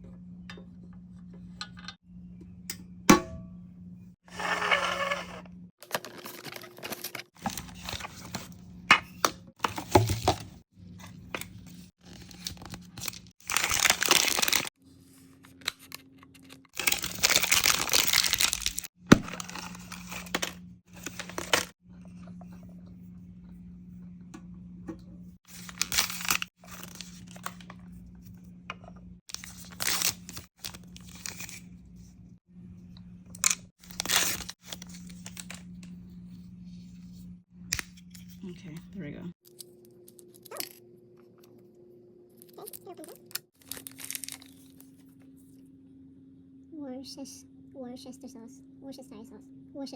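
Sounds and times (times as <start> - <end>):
plastic wrappers tearing and crinkling: 5.8 - 8.4, 11.3 - 14.7, 16.8 - 21.8, 25.5 - 27.6, 29.3 - 31.6, 33.4 - 35.6, 42.4 - 45.1.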